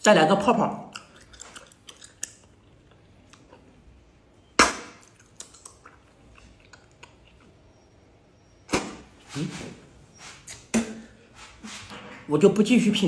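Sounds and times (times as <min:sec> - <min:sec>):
wet chewing clicks: 0:00.9 - 0:03.7, 0:04.6 - 0:07.6.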